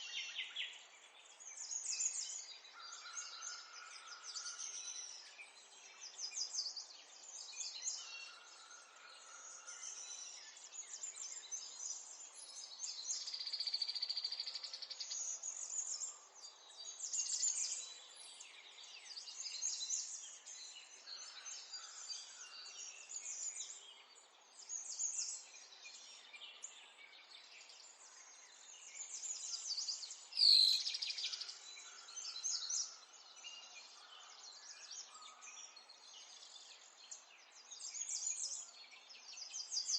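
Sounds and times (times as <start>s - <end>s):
songbirds chorus: 0.0s - 39.9s.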